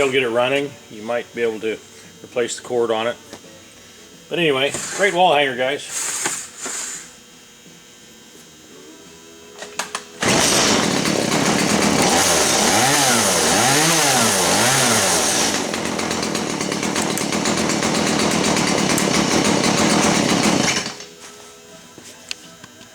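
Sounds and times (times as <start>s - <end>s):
chainsaw running: 10.2s - 21.2s.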